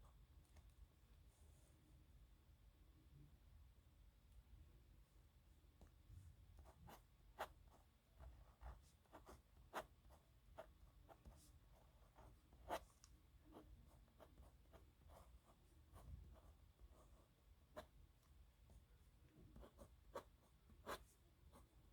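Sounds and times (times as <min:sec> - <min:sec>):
pen scratching on paper: 0:08.2 - 0:12.9, 0:13.5 - 0:17.9, 0:19.5 - 0:21.7.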